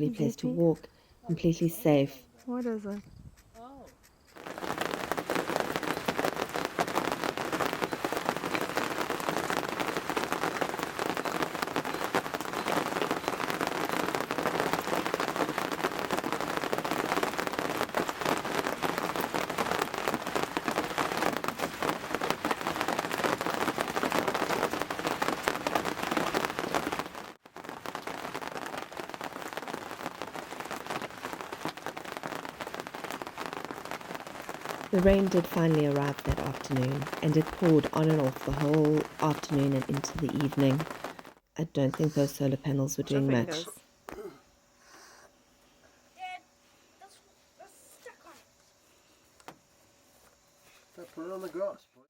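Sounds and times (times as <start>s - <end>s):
heavy rain pouring: 4.4s - 43.6s.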